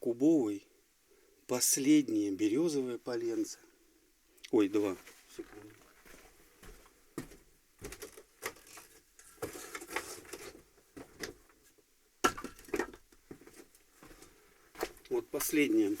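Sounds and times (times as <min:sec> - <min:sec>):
wooden logs knocking: 0:12.2 - 0:13.0.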